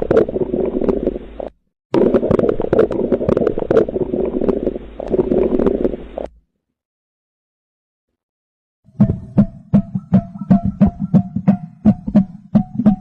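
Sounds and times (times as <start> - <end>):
bowel gurgling with small pops: 0.0 - 6.4.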